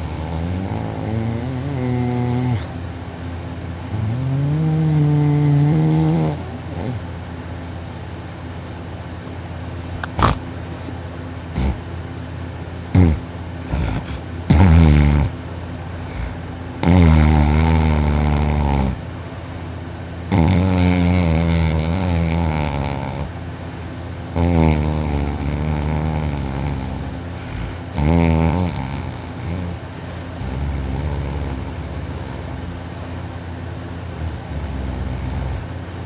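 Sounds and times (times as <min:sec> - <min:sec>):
man snoring loudly: 0:00.0 - 0:02.7, 0:03.8 - 0:07.0, 0:10.0 - 0:10.5, 0:11.5 - 0:11.8, 0:12.9 - 0:15.4, 0:16.1 - 0:19.0, 0:20.3 - 0:23.4, 0:24.3 - 0:32.8, 0:33.9 - 0:35.7
man snorting: 0:00.0 - 0:07.1, 0:09.6 - 0:12.0, 0:12.8 - 0:19.7, 0:20.3 - 0:35.8.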